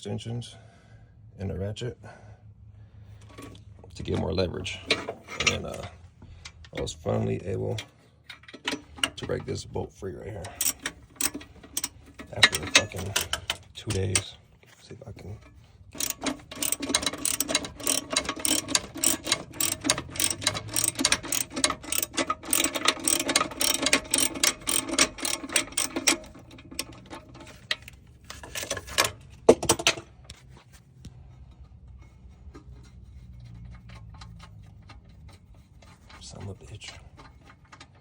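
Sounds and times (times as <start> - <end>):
socket ratchet clicking: 10.6 - 14.2, 16.0 - 29.1.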